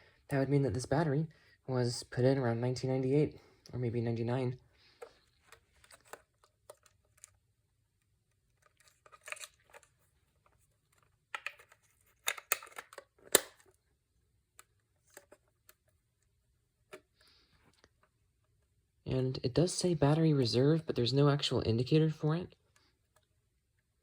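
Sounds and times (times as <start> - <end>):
plastic clock handling clicks: 11.4 - 13.7.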